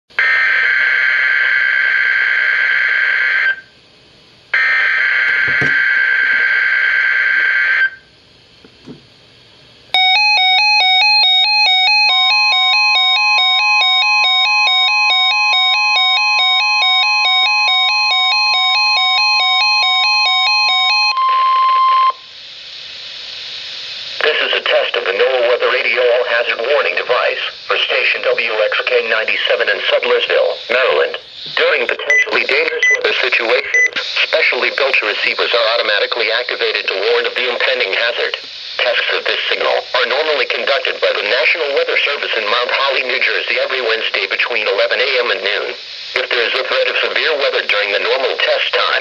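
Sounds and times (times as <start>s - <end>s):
steady alarm tone: 4.6s - 8.1s, 9.9s - 22.4s, 29.5s - 37.6s
screeching digital data tones: 30.7s - 36.8s
alternating two-pitch electronic beeping: 32.0s - 34.0s.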